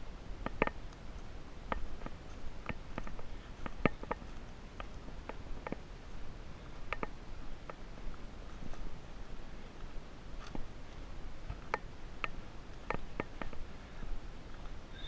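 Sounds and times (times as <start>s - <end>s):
low steady background noise: 0.0s - 15.0s
footsteps crunching: 1.7s - 11.7s.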